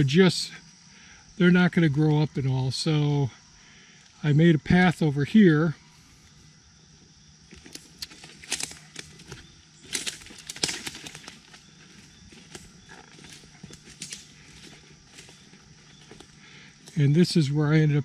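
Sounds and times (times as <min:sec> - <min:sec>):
footsteps crunching on twigs and leaves: 0:06.2 - 0:17.8.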